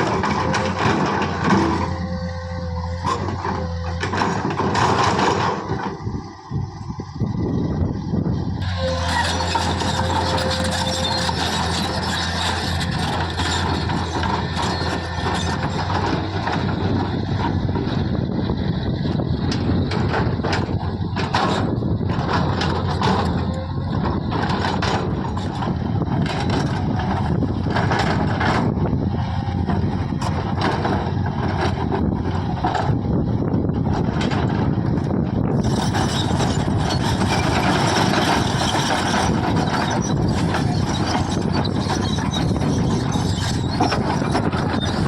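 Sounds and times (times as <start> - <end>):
knocks and clanks: 0.0 - 6.0, 8.7 - 18.1, 19.4 - 29.0, 29.6 - 33.0
diesel engine running: 0.0 - 45.0.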